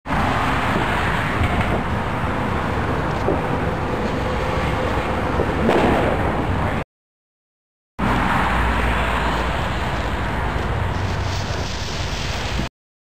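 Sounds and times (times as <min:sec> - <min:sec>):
firework spinner hissing: 0:09.1 - 0:12.7.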